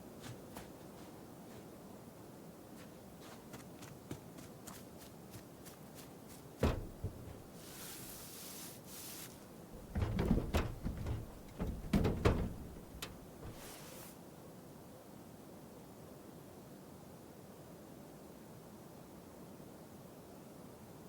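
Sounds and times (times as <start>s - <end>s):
sharp thud: 6.6s - 7.5s
low knocks and thumps: 6.6s - 7.6s, 9.8s - 13.6s
brief hiss: 13.5s - 14.2s.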